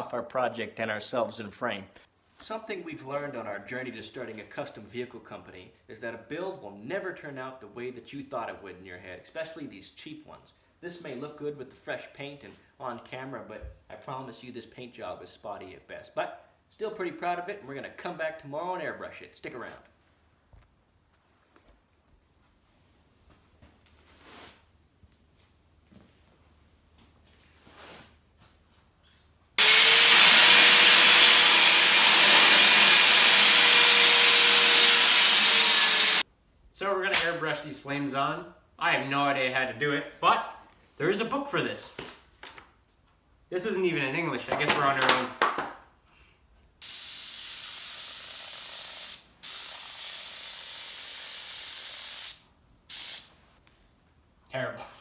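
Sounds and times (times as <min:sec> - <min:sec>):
airbrush hissing: 0:29.6 - 0:36.2, 0:46.8 - 0:53.3.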